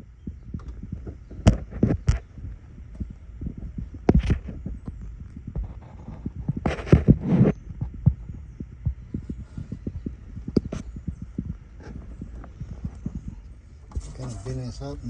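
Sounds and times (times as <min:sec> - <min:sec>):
rustling scrape: 0:13.9 - 0:14.9.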